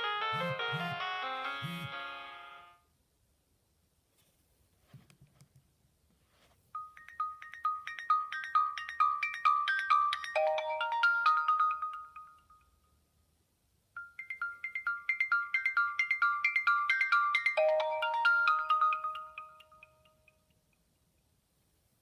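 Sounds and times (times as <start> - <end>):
phone ringtone melody: 0.0 - 2.8, 6.8 - 12.9, 14.0 - 20.5.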